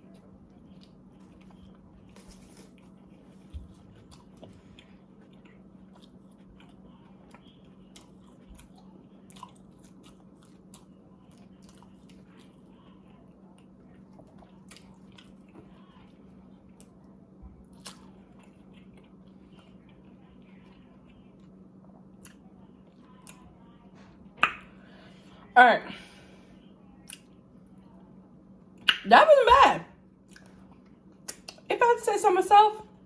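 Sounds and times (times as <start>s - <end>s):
person chewing food: 0.0s - 23.4s, 27.0s - 27.4s, 30.3s - 31.6s
steady low hum: 0.0s - 33.0s.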